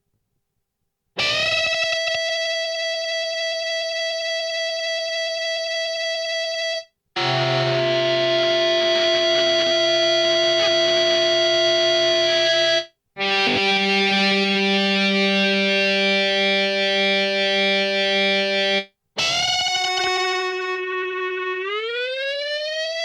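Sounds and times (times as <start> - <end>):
electric guitar feedback tones: 1.2 - 4.6, 7.2 - 21.7.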